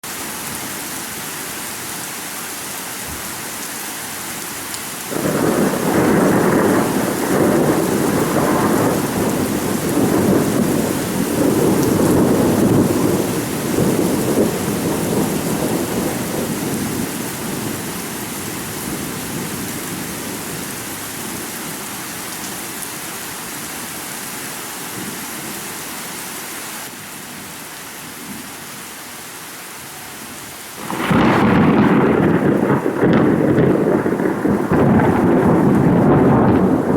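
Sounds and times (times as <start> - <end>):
rain hissing: 0.0 - 36.9
thunder rolling: 5.1 - 20.7, 30.8 - 36.9.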